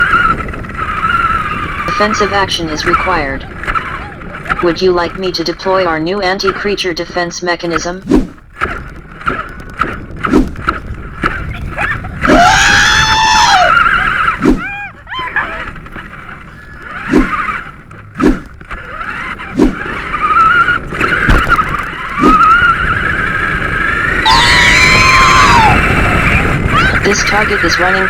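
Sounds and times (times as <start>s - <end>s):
electric motor whining: 0.0s - 28.0s
tyre skids: 0.0s - 28.0s
sharp knocks: 21.0s - 22.5s.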